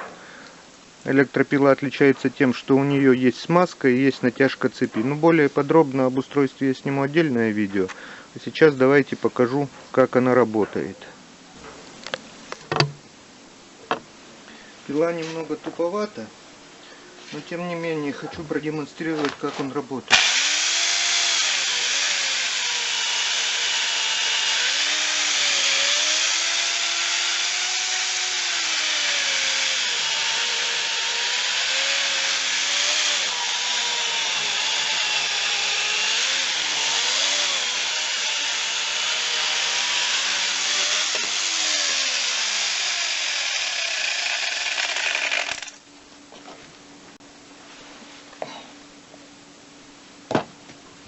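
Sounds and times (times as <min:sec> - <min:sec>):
electric chainsaw sawing wood: 0:20.1 - 0:45.8.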